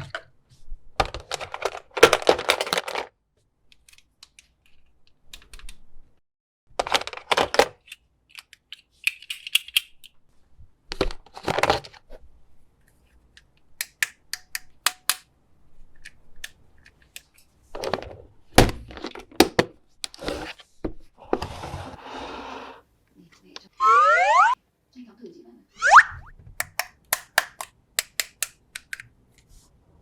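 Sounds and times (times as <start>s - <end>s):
plastic toy pieces clicking: 7.8s - 10.1s, 26.6s - 29.1s.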